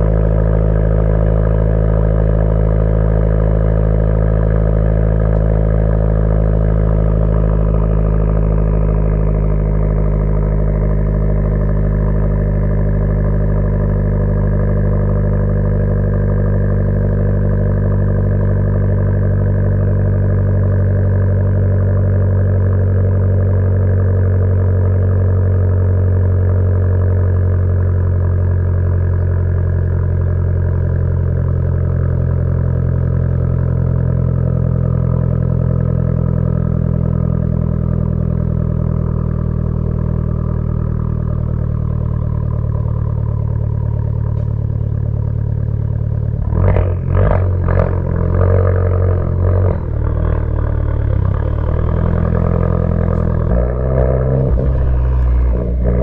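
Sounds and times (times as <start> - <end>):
engine throttle surges: 0.0 - 20.9, 42.2 - 56.0
car engine running while driving: 0.0 - 56.0.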